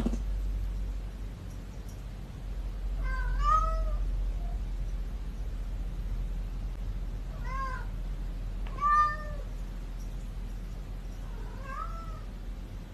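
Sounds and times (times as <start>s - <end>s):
steady low hum: 0.0s - 12.9s
cat meowing: 3.0s - 4.6s, 7.3s - 7.9s, 8.7s - 9.5s, 11.3s - 12.3s.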